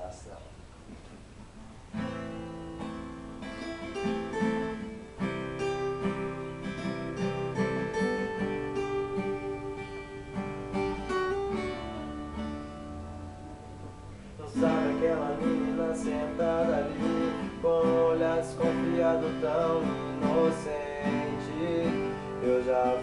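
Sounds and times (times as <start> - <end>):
acoustic guitar strummed and picked: 0.8 - 23.0.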